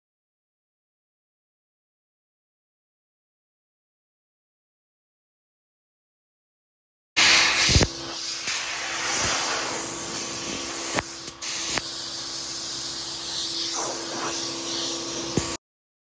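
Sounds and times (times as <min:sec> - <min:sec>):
pressurized spray hissing: 0:07.2 - 0:15.6.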